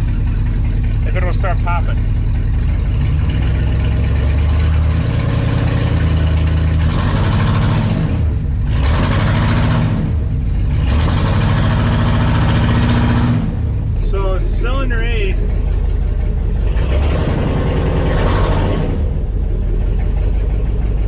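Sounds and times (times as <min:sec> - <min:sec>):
car engine revving: 0:00.0 - 0:21.0
engine misfire popping: 0:00.0 - 0:21.0.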